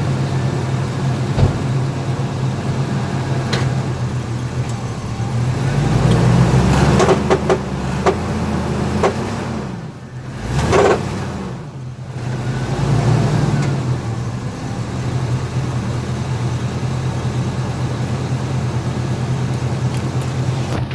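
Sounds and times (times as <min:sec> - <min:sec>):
car engine running: 0:00.0 - 0:20.9
sharp engine pops: 0:01.2 - 0:02.1.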